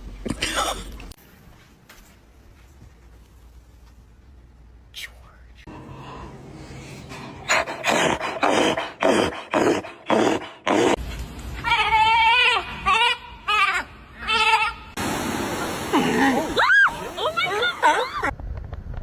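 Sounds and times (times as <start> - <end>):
dog huffing: 7.1 - 11.0.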